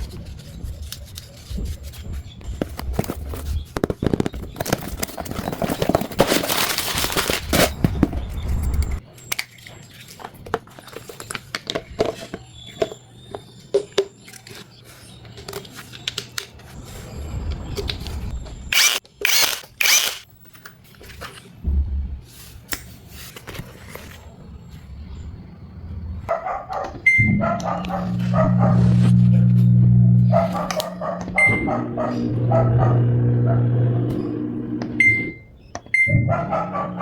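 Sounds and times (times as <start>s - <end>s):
washer-dryer low hum: 26.7s - 37.0s
clicking and crackling: 27.4s - 37.0s.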